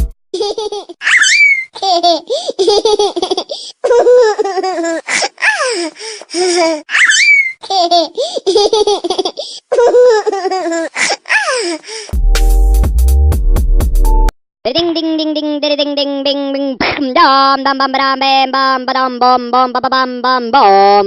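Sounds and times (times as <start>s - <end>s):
baby laughing with squeals: 0.4s - 12.0s.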